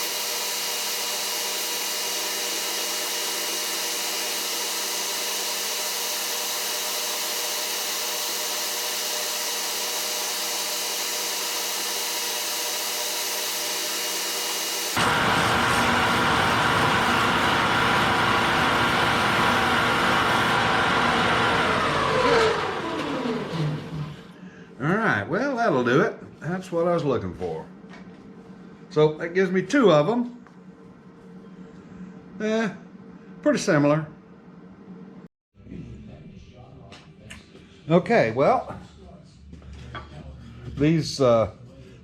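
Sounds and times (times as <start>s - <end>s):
lathe motor whining: 0.0s - 24.4s.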